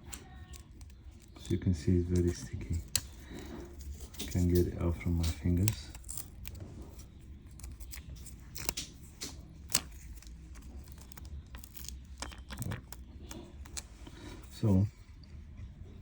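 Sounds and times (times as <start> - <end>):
adhesive tape crinkling: 0.0 - 14.7
low steady hum: 0.0 - 16.0.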